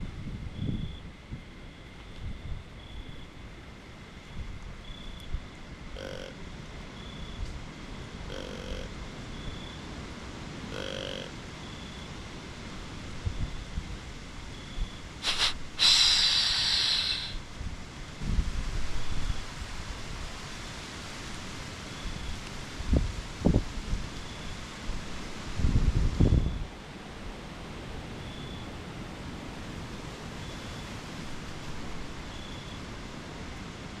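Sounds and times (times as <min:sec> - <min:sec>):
wind: 0:00.0 - 0:34.0
person imitating deer snort-wheeze: 0:10.7 - 0:11.3, 0:15.2 - 0:17.4.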